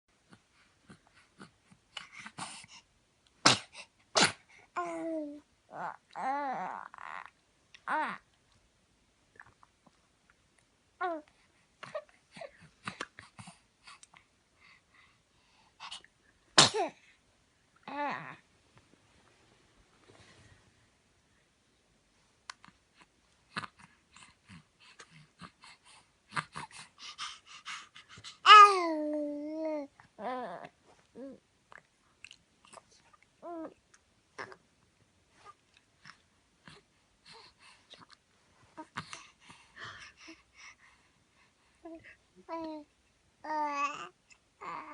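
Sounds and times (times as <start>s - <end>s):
baby sneezing: 3.4s - 4.5s, 16.6s - 17.0s
sniffly breaths: 23.7s - 28.5s, 38.8s - 42.2s
baby vocal sound: 24.5s - 31.4s, 41.8s - 44.9s.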